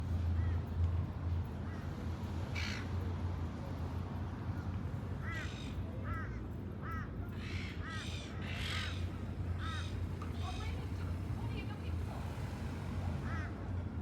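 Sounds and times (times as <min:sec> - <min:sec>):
birds calling: 0:07.4 - 0:10.8.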